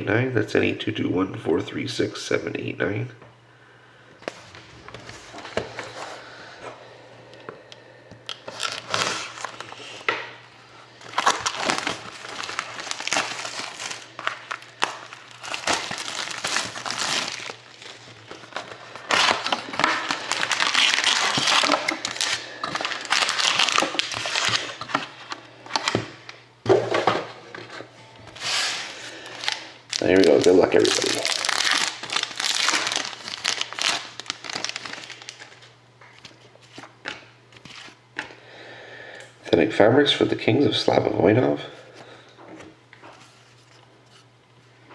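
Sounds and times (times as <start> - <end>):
plastic wrapping crinkling and tearing: 8.3 - 10.2, 11.0 - 26.0, 28.3 - 38.0.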